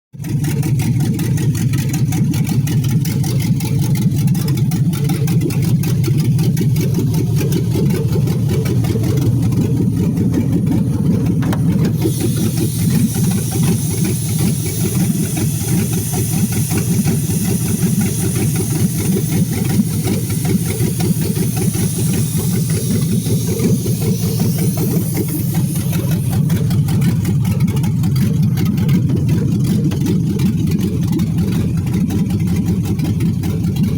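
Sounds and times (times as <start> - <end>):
engine idling through open exhaust: 0.2 - 33.9
high hiss: 11.9 - 26.9.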